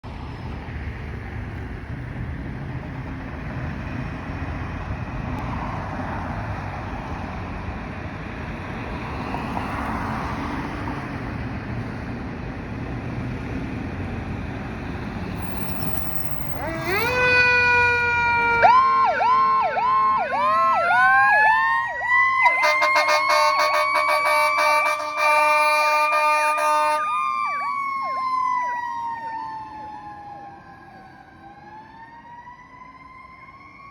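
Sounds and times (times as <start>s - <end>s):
engine and road noise: 0.0s - 33.9s
fire truck siren: 8.3s - 12.0s, 14.7s - 33.9s.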